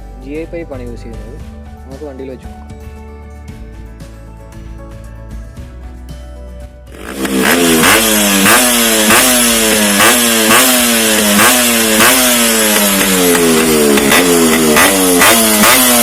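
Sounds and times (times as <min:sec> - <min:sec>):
motorcycle engine revving: 0:06.9 - 0:16.0.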